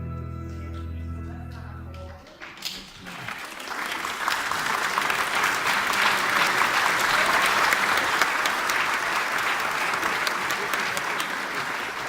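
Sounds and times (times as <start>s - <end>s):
audience applauding: 2.2s - 12.0s.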